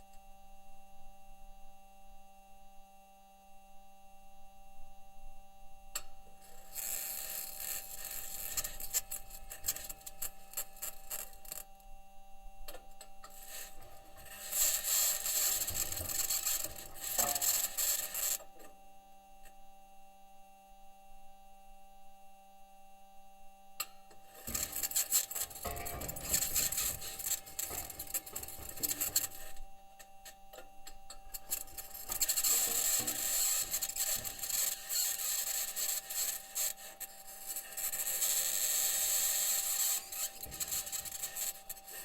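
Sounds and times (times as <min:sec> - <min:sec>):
steady hum: 0:05.6 - 0:19.7, 0:23.1 - 0:42.0
harsh scraping and rasping: 0:06.5 - 0:11.6, 0:13.2 - 0:18.5, 0:24.3 - 0:42.0.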